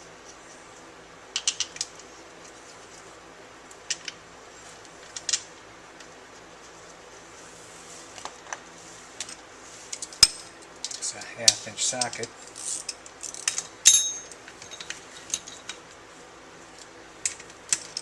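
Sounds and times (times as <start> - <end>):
metal tools and bolts clinking: 10.2 - 15.8.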